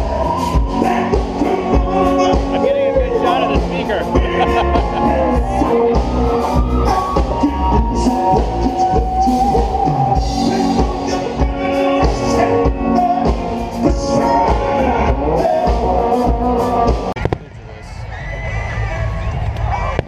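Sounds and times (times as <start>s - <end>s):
rock music over loudspeaker: 0.0s - 20.0s.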